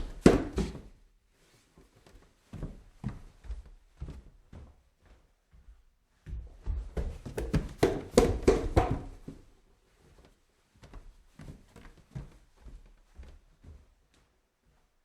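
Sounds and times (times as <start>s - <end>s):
footsteps climbing stairs: 0.0s - 1.0s, 2.1s - 9.5s.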